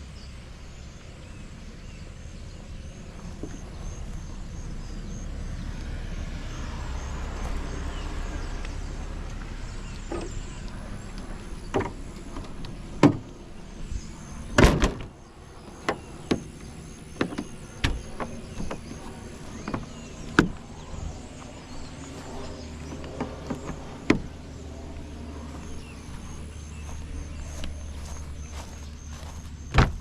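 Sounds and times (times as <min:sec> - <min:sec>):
car doors clicking and knocking: 0:11.7 - 0:13.3, 0:14.6 - 0:15.1, 0:17.1 - 0:20.6, 0:29.7 - 0:30.0
low rumble: 0:17.5 - 0:30.0.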